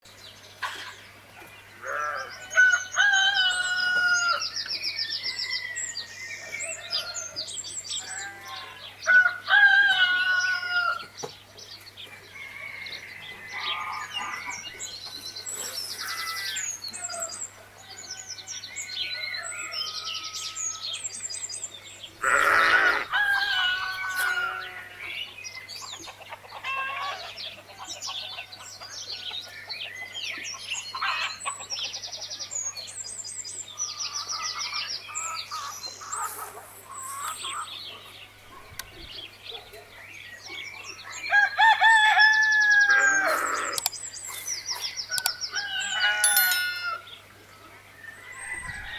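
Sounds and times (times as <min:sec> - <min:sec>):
small songbirds chirping: 0:00.0 - 0:09.6, 0:10.4 - 0:48.9
roosters crowing: 0:01.7 - 0:04.6, 0:05.2 - 0:11.2, 0:12.1 - 0:14.8, 0:18.1 - 0:21.1, 0:22.2 - 0:25.2, 0:41.2 - 0:43.9, 0:45.0 - 0:47.3, 0:48.1 - 0:48.9.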